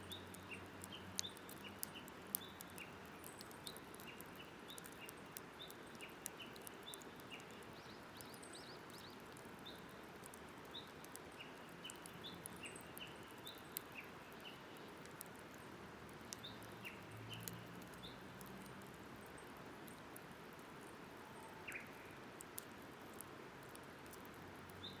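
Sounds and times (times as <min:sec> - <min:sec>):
campfire crackling: 0:00.0 - 0:25.0
birds chirping: 0:00.1 - 0:15.0, 0:21.2 - 0:22.2.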